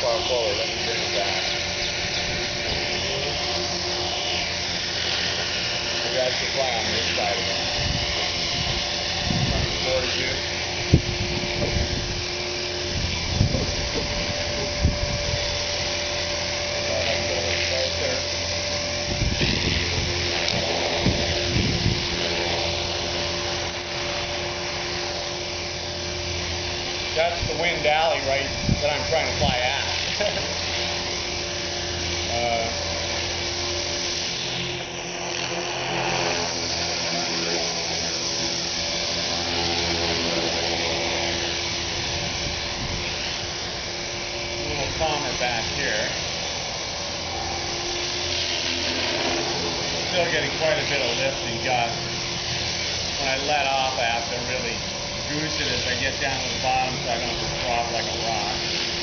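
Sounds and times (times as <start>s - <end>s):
model helicopter rotor whine: 0.0s - 59.0s
wind buffeting microphone: 7.5s - 16.0s, 19.0s - 23.0s, 27.0s - 30.0s, 41.9s - 43.8s.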